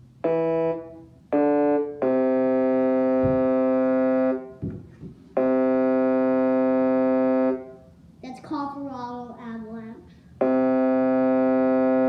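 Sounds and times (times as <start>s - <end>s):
electronic keyboard organ chords: 0.0s - 4.6s, 5.4s - 7.8s, 10.4s - 12.0s.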